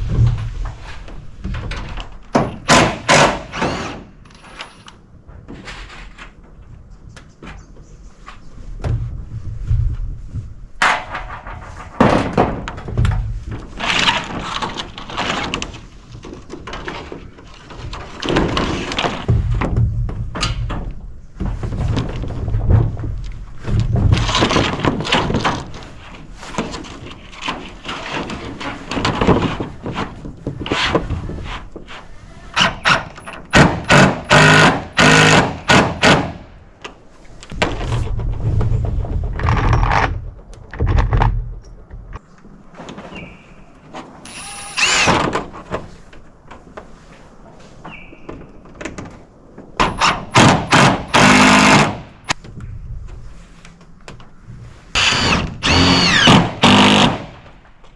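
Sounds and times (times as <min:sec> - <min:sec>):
thuds and knocks on roof: 0:10.8 - 0:13.8, 0:18.0 - 0:25.8.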